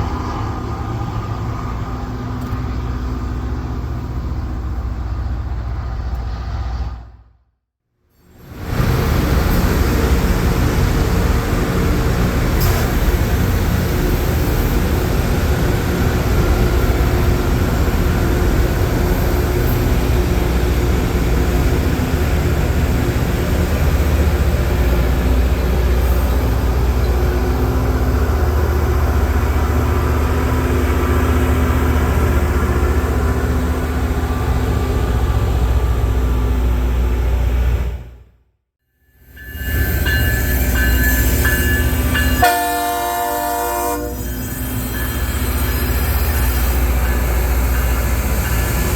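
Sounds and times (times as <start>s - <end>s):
harsh grinding on rail: 39.3s - 48.9s.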